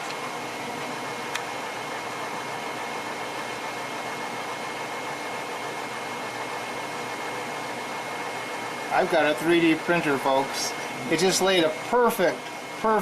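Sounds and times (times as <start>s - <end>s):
printer cooling fans whirring: 0.0s - 13.0s.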